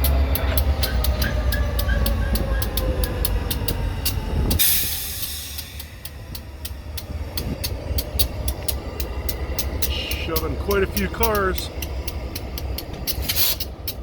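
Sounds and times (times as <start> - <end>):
diesel locomotive rumble: 0.0 - 14.0
turbo whine: 0.0 - 14.0
air hiss burst: 4.6 - 6.1
regular clicks: 5.6 - 14.0.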